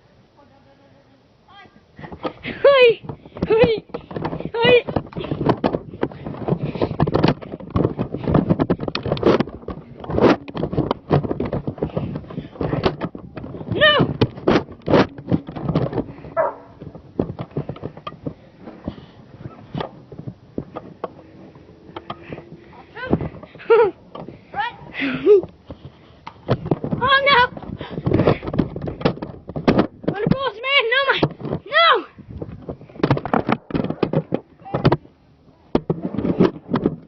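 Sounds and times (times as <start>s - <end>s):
dog barking: 16.4s - 16.7s
quick knocks and thumps: 25.7s - 30.5s.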